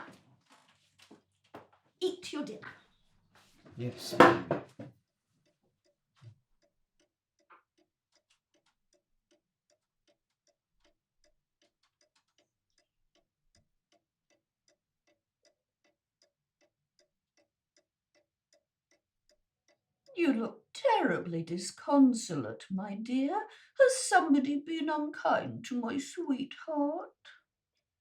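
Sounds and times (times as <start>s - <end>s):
soft knocks: 4.0s - 4.9s.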